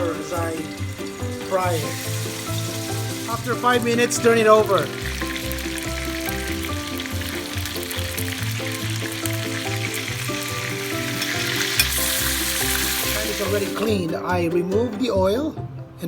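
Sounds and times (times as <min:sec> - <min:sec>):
chicken sizzling in oil: 0:00.0 - 0:14.0
background music: 0:00.0 - 0:16.0.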